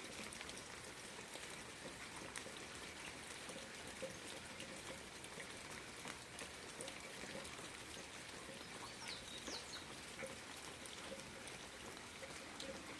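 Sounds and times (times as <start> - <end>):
light rain falling: 0.0 - 12.9.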